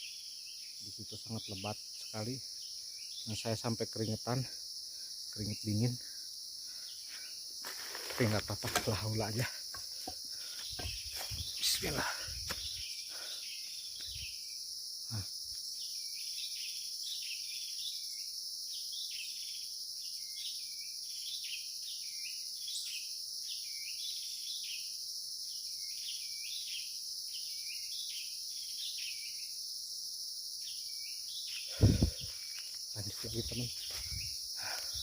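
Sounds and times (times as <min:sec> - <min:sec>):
high-pitched insect drone: 0:00.0 - 0:35.0.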